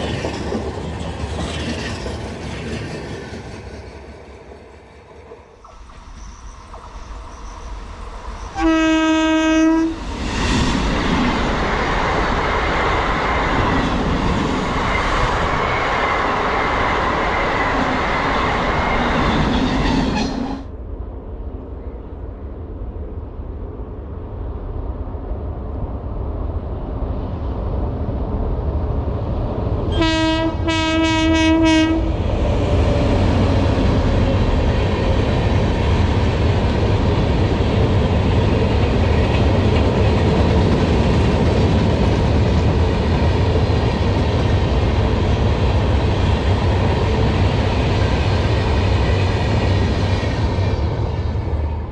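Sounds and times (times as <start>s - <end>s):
train rushing past: 0.0s - 51.9s
locomotive horn: 8.5s - 10.0s, 29.9s - 32.1s.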